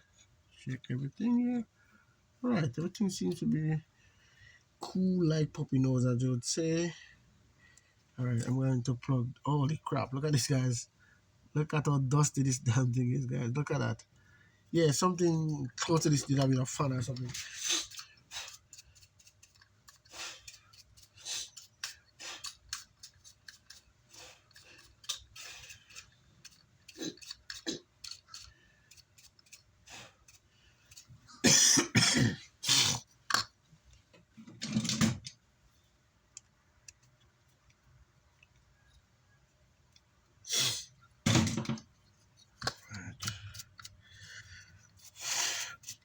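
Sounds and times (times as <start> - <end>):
parts handled on workbench: 34.2 - 35.4, 41.3 - 44.0.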